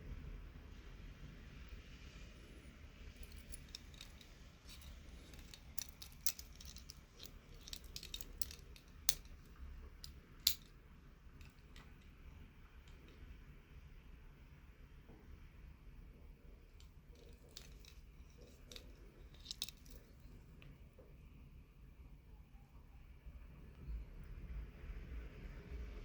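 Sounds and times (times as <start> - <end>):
wristwatch metallic clicks: 3.2 - 10.7, 16.8 - 20.2.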